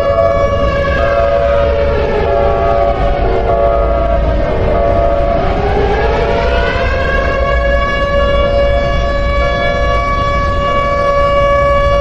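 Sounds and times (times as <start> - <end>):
air-raid siren wailing: 0.0 - 12.0.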